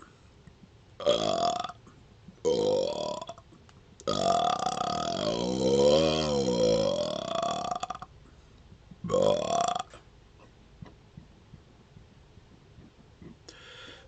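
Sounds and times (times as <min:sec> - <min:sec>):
man burping: 0:01.0 - 0:01.8, 0:02.4 - 0:03.4, 0:04.1 - 0:08.1, 0:09.0 - 0:10.0
swallowing clicks and gulps: 0:08.6 - 0:13.5.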